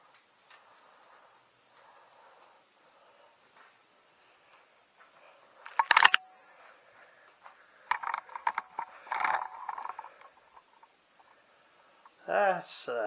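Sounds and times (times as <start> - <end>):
light clattering and scraping: 7.3 - 11.4.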